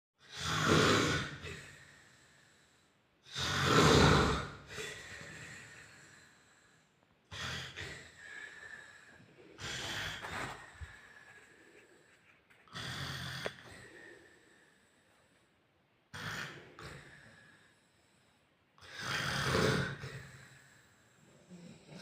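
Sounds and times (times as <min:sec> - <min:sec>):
man snoring: 0:00.2 - 0:02.0, 0:03.3 - 0:06.1, 0:12.7 - 0:14.2, 0:16.1 - 0:17.5, 0:18.8 - 0:20.6, 0:21.2 - 0:22.0.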